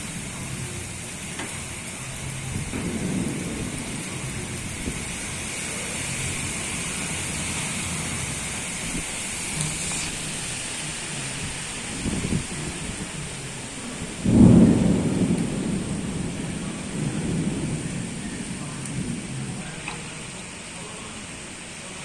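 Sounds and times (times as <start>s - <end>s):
strong storm wind blowing: 1.6s - 19.9s.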